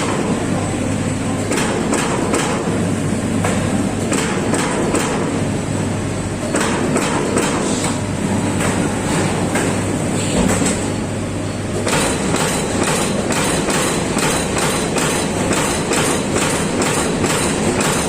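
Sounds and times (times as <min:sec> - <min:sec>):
steady machine hum: 0:00.0 - 0:18.0
punch press strikes on metal: 0:01.5 - 0:02.8, 0:03.4 - 0:05.4, 0:06.4 - 0:07.7, 0:11.8 - 0:18.0.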